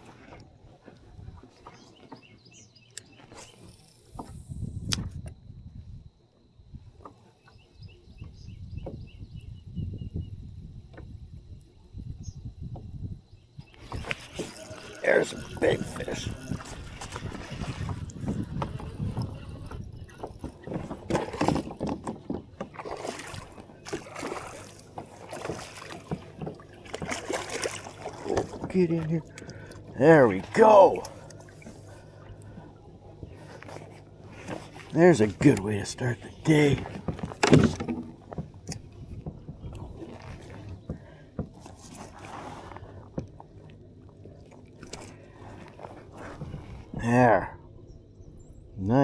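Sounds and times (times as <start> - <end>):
small birds chirping: 1.6 - 4.3, 7.2 - 10.6, 11.7 - 21.0
kayak knocks and rustles: 8.2 - 9.4, 12.6 - 47.0
water splashing: 13.8 - 40.8
knocks on kayak: 37.0 - 38.6.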